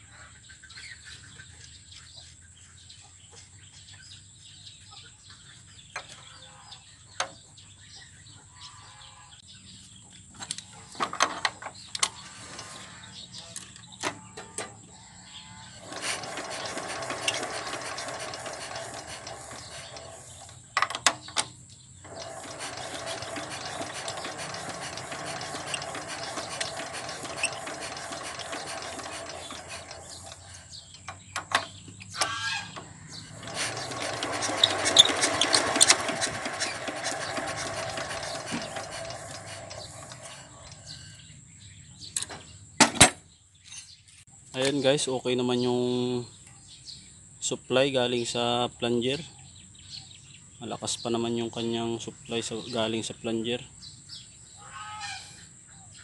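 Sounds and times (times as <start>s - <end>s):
diesel engine being turned over: 15.8s - 41.1s.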